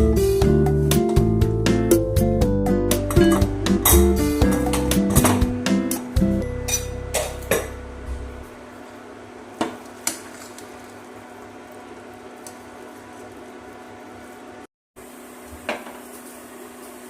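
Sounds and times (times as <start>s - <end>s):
background music: 0.0s - 8.4s
metal utensil clinking on cookware: 6.6s - 7.8s.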